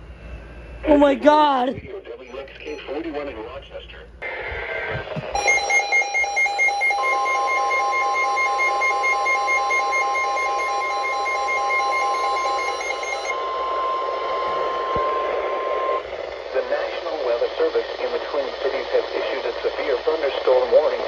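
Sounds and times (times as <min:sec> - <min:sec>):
radio hiss: 0:01.7 - 0:05.4, 0:13.4 - 0:21.0
rapid electronic alarm beeping: 0:02.1 - 0:03.3, 0:05.3 - 0:16.5
steady warning alarm tone: 0:05.3 - 0:18.0.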